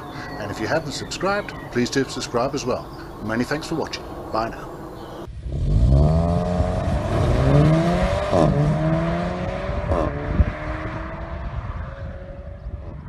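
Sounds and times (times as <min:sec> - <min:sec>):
racing car engine accelerating: 0:05.4 - 0:13.0.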